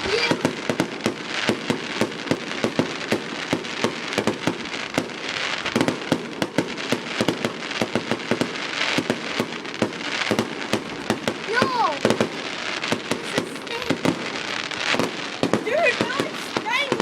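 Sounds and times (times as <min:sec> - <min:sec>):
fireworks banging: 0:00.0 - 0:17.0
steady hiss: 0:11.4 - 0:17.0.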